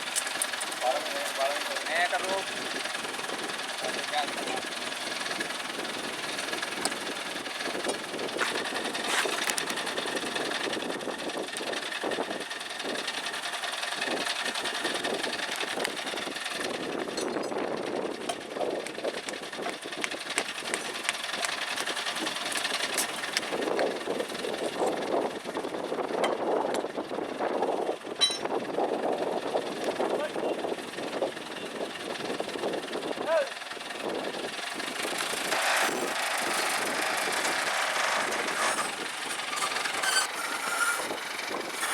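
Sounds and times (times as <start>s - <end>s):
crane diesel engine running: 0.0s - 41.9s.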